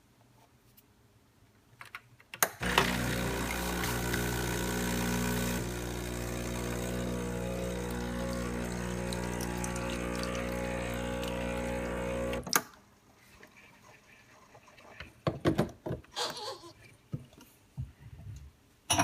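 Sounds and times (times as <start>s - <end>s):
espresso machine pump humming: 2.6s - 12.5s.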